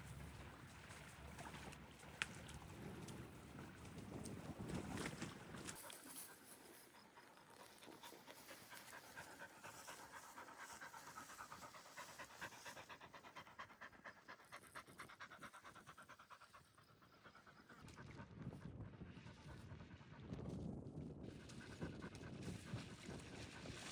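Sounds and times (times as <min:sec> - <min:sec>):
dog panting: 0:00.4 - 0:18.6.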